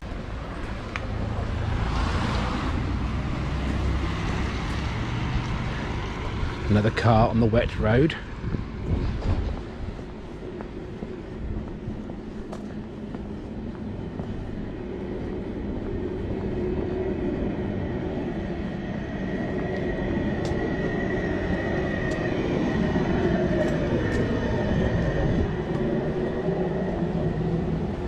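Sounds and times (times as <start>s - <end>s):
van driving past on wet road: 1.0s - 6.4s
high steady whine: 4.6s - 28.0s.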